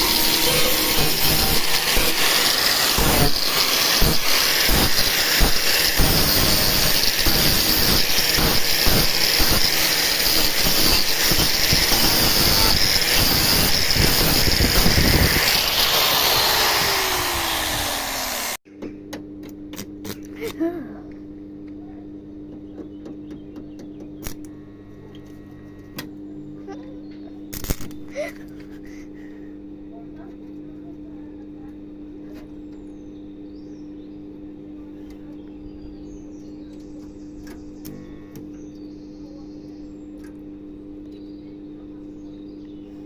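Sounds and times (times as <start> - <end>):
angle grinder cutting sheet metal: 0.0 - 18.6
grinder disc spinning down: 0.0 - 18.6.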